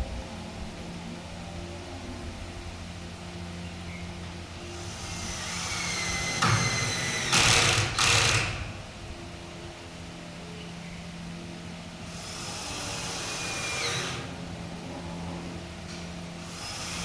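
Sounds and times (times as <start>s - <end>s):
power tool motor whine: 4.7s - 8.8s, 12.0s - 14.3s, 16.4s - 17.0s.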